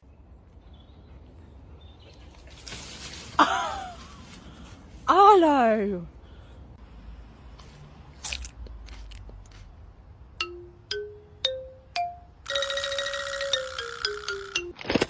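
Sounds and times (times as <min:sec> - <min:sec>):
xylophone-like mallet notes: 0:10.4 - 0:14.8.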